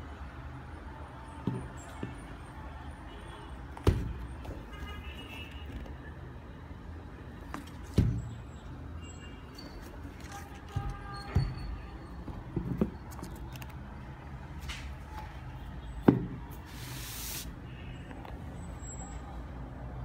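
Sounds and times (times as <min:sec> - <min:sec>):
soft handling knocks and taps: 0:09.8 - 0:13.7.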